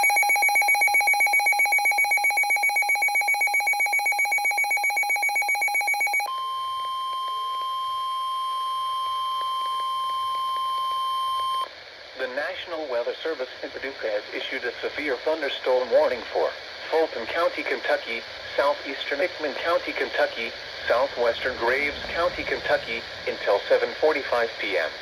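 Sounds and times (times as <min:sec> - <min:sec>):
rapidly pulsing alarm beep: 0:00.0 - 0:11.7
steady warning alarm tone: 0:00.0 - 0:11.7.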